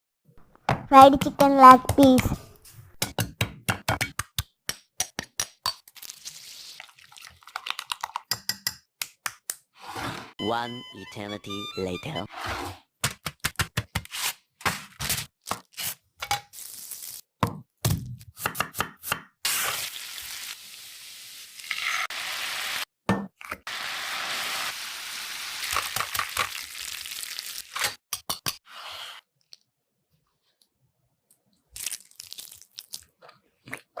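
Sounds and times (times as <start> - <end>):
food sizzling in hot oil: 16.5 - 17.2, 19.5 - 22.9, 23.7 - 28.0
knife chopping on board: 17.4 - 19.3.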